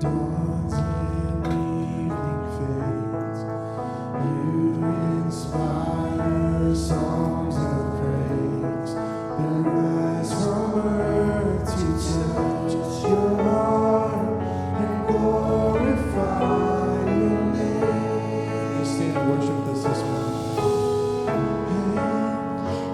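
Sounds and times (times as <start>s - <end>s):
instrumental accompaniment: 0.0s - 22.9s
group singing worship song: 9.9s - 22.9s.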